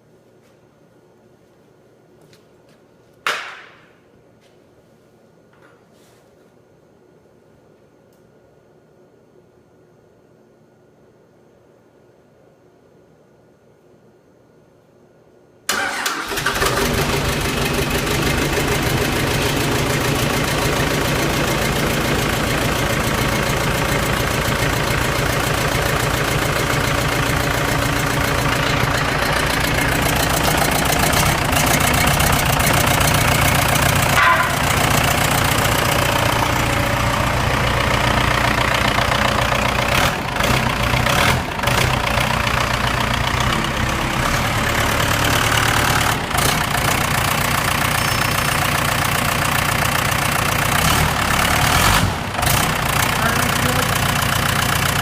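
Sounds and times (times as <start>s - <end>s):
diesel engine starting and running: 15.7s - 55.0s.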